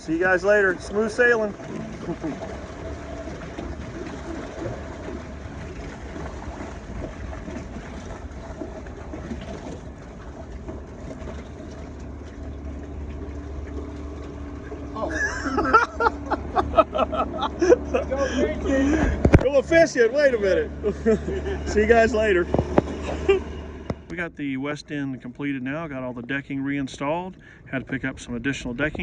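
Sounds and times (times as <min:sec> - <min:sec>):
boat engine droning: 0:00.0 - 0:29.0
outdoor noise: 0:00.0 - 0:29.0
man's voice: 0:18.0 - 0:20.8.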